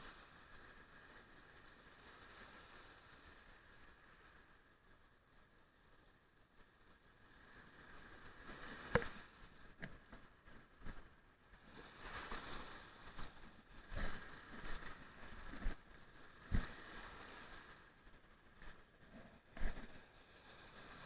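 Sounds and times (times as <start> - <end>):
sea water sloshing: 7.7 - 11.0.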